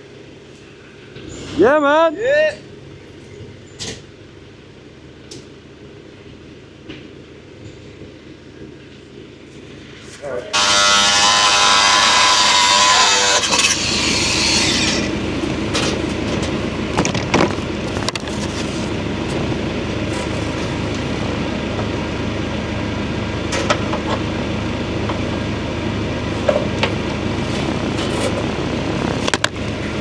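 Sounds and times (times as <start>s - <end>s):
diesel machinery running: 8.6s - 30.0s
loud whining motor: 10.2s - 30.0s.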